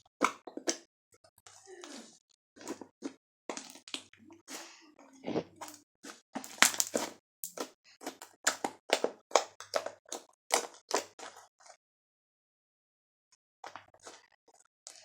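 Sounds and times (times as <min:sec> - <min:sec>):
slime popping and squelching: 0:06.4 - 0:11.1.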